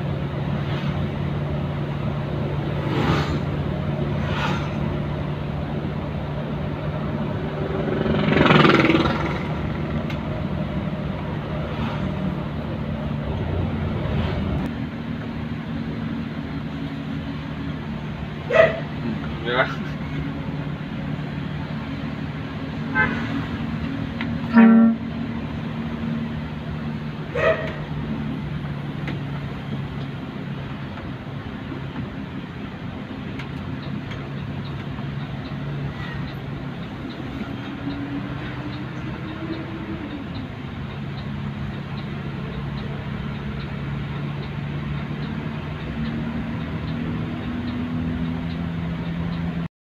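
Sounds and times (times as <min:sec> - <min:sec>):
vehicle engine and road drone: 0:00.0 - 0:49.7
short horn toot: 0:24.4 - 0:25.2
faint high ticks: 0:36.2 - 0:49.6.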